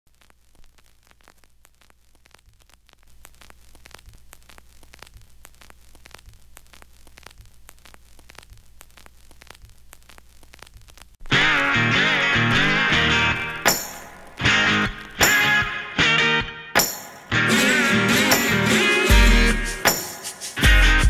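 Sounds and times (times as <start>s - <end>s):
faint crackling static: 0.0s - 16.2s.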